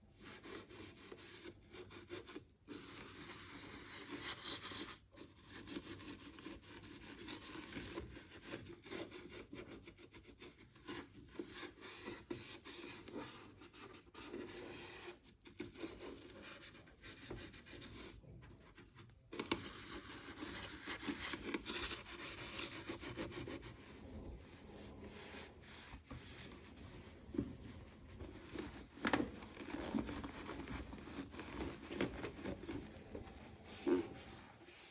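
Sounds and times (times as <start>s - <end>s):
scrubbing washing machine surface: 19.7s - 34.9s.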